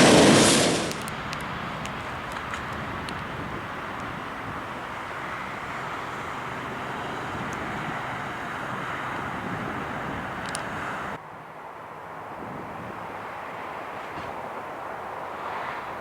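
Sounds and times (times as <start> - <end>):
jet engine rushing: 0.0 - 11.2.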